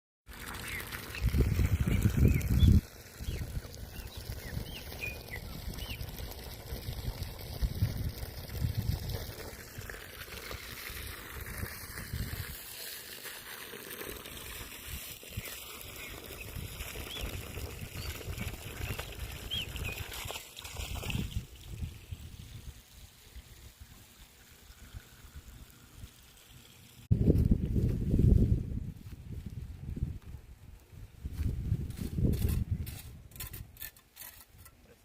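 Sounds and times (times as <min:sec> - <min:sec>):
small songbird chirping: 0:00.6 - 0:06.1.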